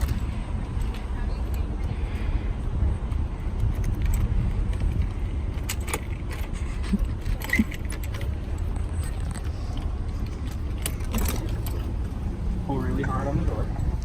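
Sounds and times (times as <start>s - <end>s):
steady low rumble: 0.0s - 14.0s
light metallic clicks and jingles: 3.0s - 12.2s.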